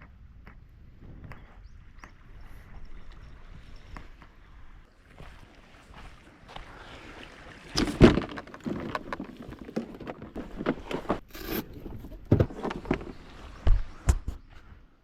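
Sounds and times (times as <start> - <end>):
gear knocking and clattering in boat: 7.8 - 14.2.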